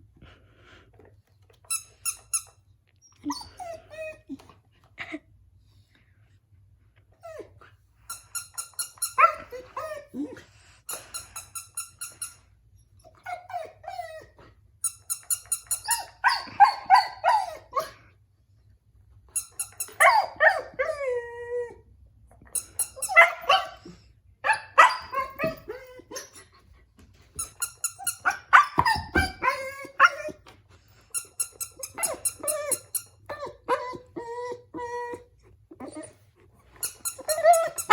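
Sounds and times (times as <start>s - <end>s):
puppy whining and howling: 13.0s - 14.5s, 19.9s - 22.0s, 24.5s - 26.5s, 28.2s - 30.4s, 31.8s - 37.9s.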